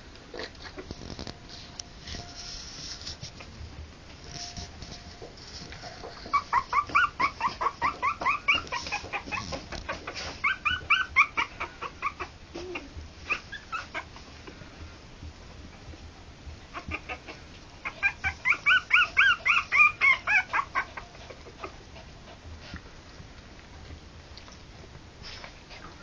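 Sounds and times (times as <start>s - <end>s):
puppies squeaking and whimpering: 5.7s - 14.2s, 16.7s - 22.1s.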